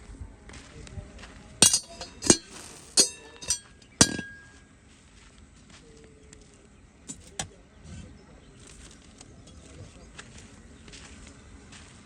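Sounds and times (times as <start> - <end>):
hard objects clinking: 1.6 - 4.6.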